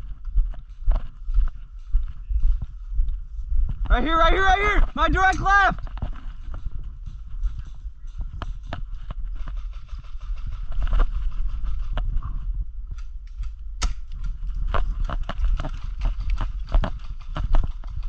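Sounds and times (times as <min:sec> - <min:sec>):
footsteps on rough ground: 0:00.0 - 0:18.0
wind rumble: 0:00.0 - 0:18.0
gear rattling: 0:05.0 - 0:12.2, 0:14.2 - 0:18.0.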